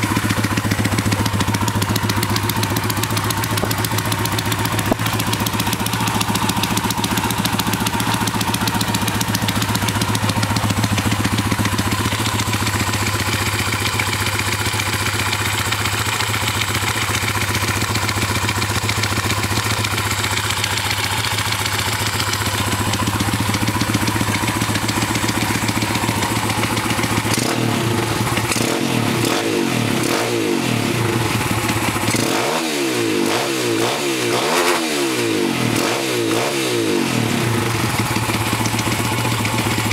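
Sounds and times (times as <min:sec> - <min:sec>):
motorbike engine idling and revving: 0:00.0 - 0:39.9.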